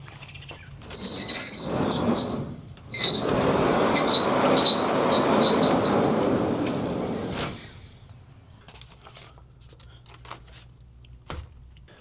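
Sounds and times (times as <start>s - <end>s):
high metallic squealing: 0.9s - 7.1s.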